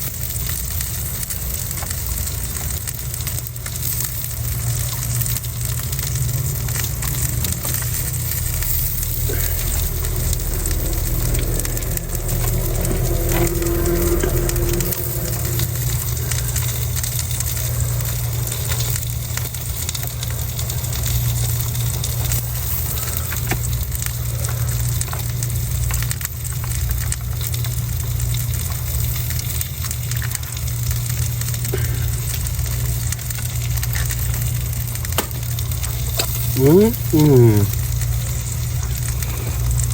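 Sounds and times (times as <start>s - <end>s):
low hum: 6.1s - 18.5s.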